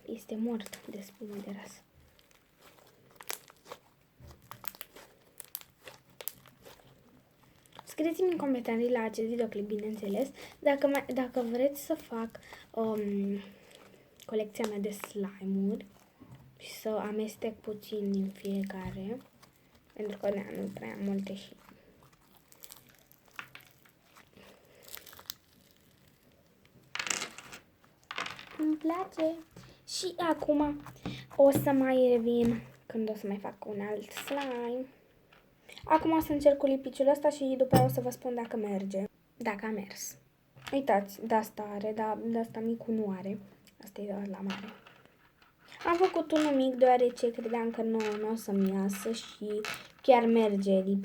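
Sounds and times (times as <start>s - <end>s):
slime crackling and popping: 0.6s - 8.4s, 18.0s - 26.9s.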